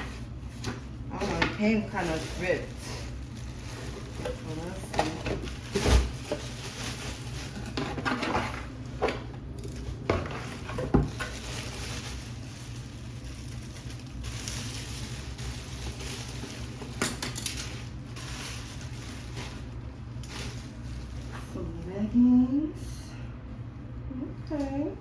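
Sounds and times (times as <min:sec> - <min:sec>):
packaging torn and rustling: 0:02.1 - 0:08.8, 0:09.4 - 0:21.3.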